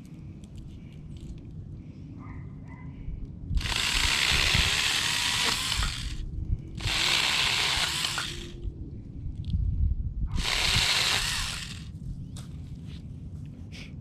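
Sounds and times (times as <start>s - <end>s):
chainsaw cutting branch: 3.6s - 6.2s, 6.8s - 8.6s, 10.4s - 11.9s.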